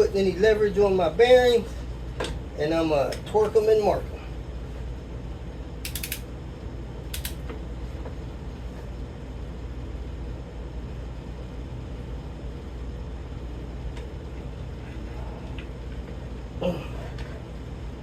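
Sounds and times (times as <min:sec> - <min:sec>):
shop fan humming: 0:00.0 - 0:18.0
socket wrench clicking: 0:05.8 - 0:06.2, 0:07.1 - 0:07.4.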